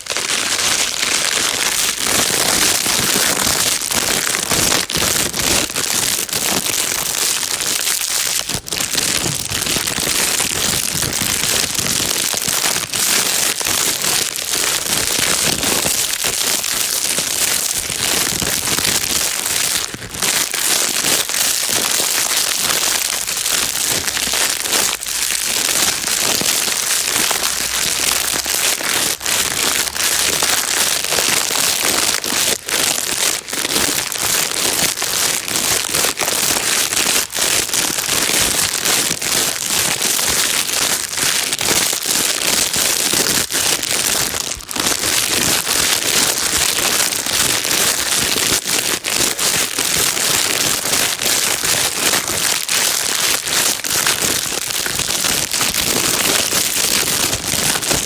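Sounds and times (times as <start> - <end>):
plastic bag crinkling: 0.0 - 58.0.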